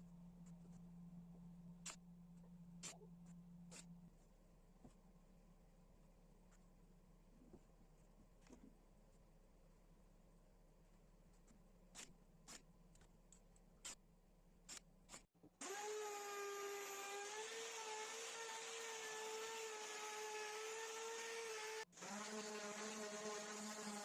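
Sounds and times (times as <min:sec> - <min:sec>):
power tool motor whining: 0:15.6 - 0:24.0.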